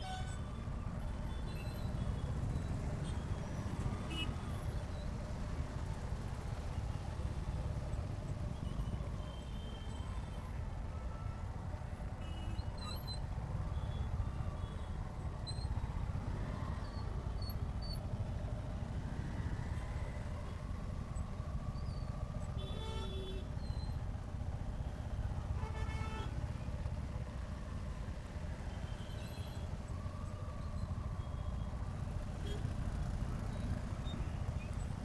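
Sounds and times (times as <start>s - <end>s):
road noise: 13.1s - 35.0s.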